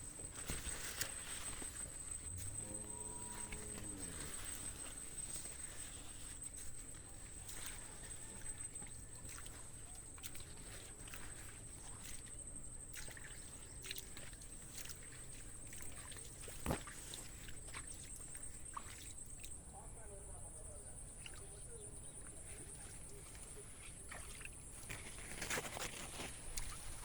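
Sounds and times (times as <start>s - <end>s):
faint water sloshing: 0.0s - 27.0s
high-pitched whine: 0.4s - 9.1s.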